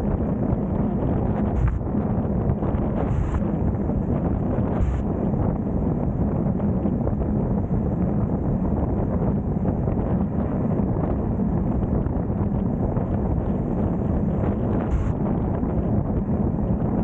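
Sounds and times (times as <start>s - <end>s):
wind rushing over microphone: 0.0s - 17.0s.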